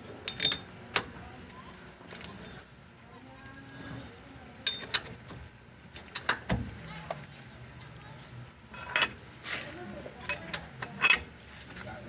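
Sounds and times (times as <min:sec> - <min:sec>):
metal tools clicking and knocking: 0:00.2 - 0:01.2, 0:04.6 - 0:05.4, 0:06.0 - 0:06.6, 0:08.7 - 0:09.2, 0:10.2 - 0:11.3.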